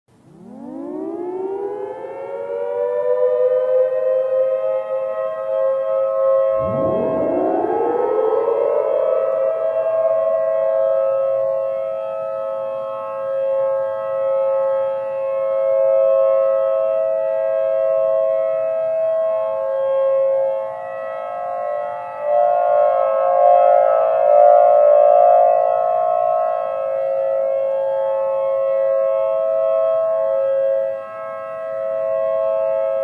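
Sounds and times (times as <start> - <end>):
civil defense siren: 0.1 - 33.0.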